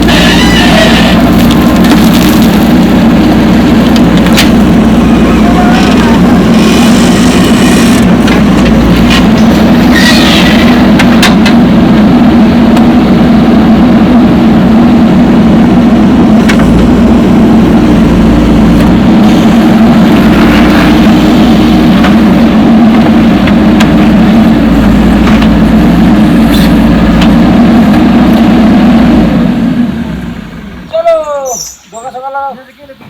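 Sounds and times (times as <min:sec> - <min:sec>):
diesel engine running under load: 0:00.0 - 0:31.8.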